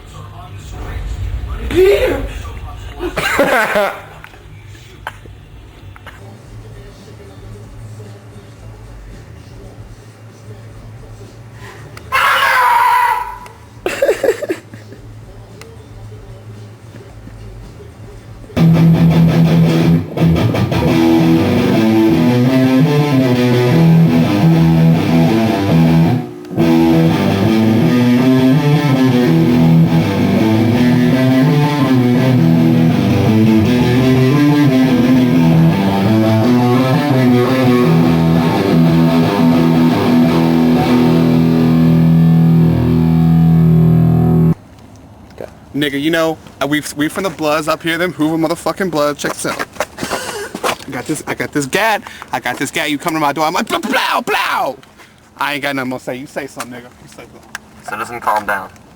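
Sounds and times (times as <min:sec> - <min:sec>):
guitar music: 0:18.6 - 0:44.6.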